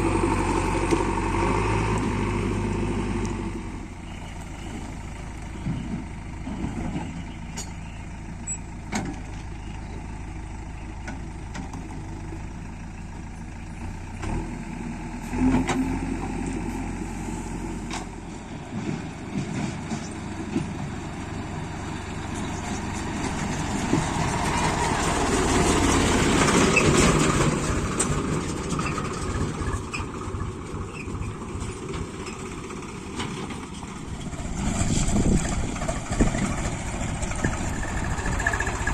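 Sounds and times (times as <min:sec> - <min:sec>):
diesel engine working: 0:00.0 - 0:38.9.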